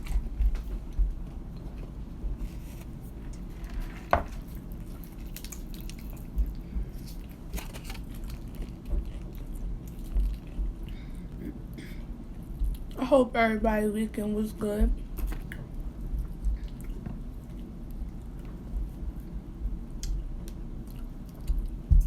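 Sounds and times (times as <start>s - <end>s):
wet chewing: 0.0s - 11.4s, 15.1s - 19.1s, 20.0s - 21.9s.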